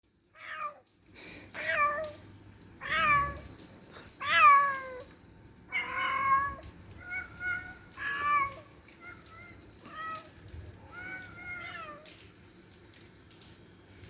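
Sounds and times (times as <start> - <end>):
cat meowing: 0.4 - 0.9, 2.8 - 3.5, 4.2 - 5.1, 5.7 - 12.2.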